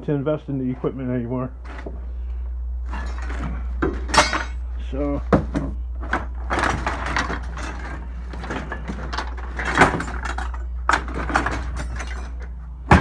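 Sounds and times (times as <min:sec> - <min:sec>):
steady low hum: 0:00.0 - 0:13.0
hard objects knocking and scraping: 0:01.6 - 0:02.0, 0:05.3 - 0:13.0.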